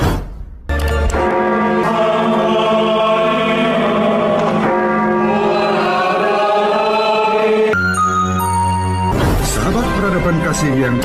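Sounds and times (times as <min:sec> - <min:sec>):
choir-like held chords: 0:00.8 - 0:09.0.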